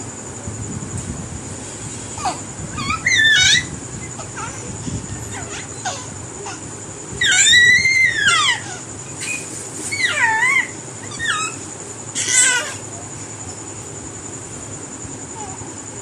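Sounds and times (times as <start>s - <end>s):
parrot squeaky calls: 2.7s - 3.7s, 7.2s - 11.6s.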